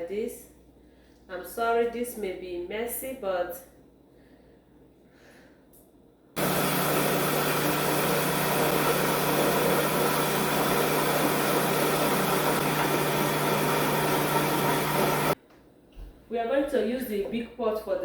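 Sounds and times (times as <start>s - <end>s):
electric blender running: 6.4s - 15.4s.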